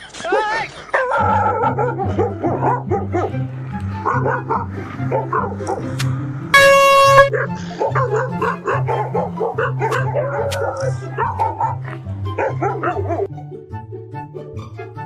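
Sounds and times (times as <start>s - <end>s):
dog barking and yipping: 0.2s - 6.0s, 6.9s - 13.3s
background music with bass line: 1.2s - 15.0s
air horn blast: 6.5s - 7.4s.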